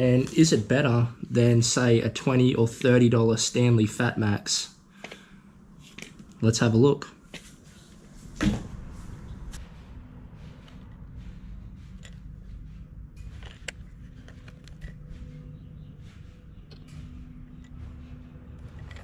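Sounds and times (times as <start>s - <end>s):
steady low hum: 0.0s - 19.0s
objects being handled: 5.0s - 6.4s, 10.4s - 19.0s.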